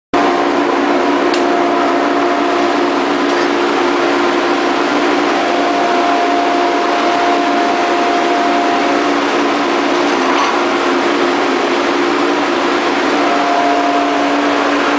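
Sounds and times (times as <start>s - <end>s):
thickness planer droning: 0.2s - 14.9s.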